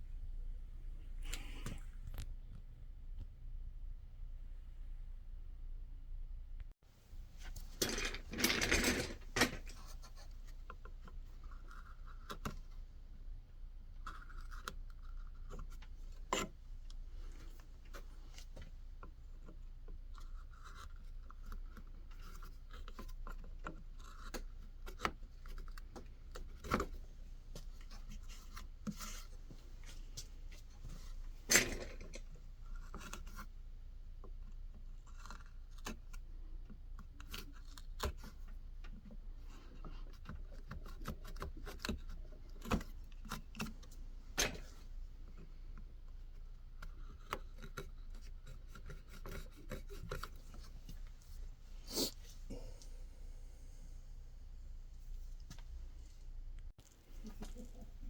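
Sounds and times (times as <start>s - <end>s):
knife carving wood: 35.0s - 36.1s, 46.8s - 50.6s.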